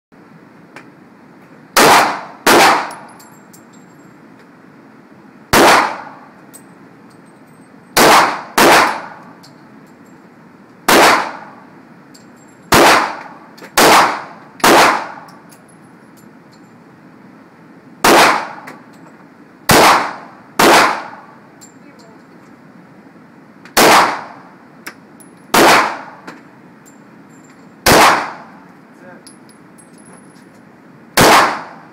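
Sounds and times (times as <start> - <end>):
gunshots with ringing tail: 1.8 - 3.1, 5.5 - 6.2, 8.0 - 9.2, 10.9 - 11.6, 12.7 - 15.3, 18.0 - 18.6, 19.7 - 21.3, 23.8 - 24.4, 25.5 - 26.2, 27.8 - 28.5, 31.2 - 31.9.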